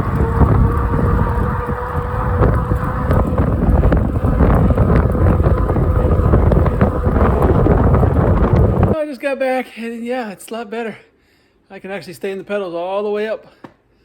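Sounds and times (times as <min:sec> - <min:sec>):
wind buffeting microphone: 0:00.0 - 0:09.0.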